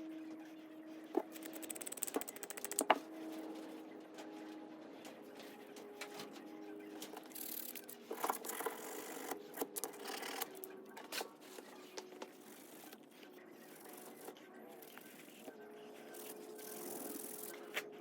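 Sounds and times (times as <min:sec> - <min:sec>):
metal parts scraping and clicking: 0:01.3 - 0:02.9.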